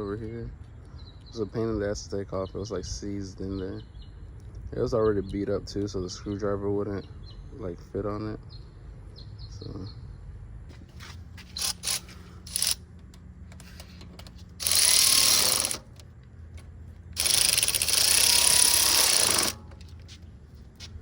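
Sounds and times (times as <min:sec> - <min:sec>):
tool clicks: 0:11.5 - 0:20.0.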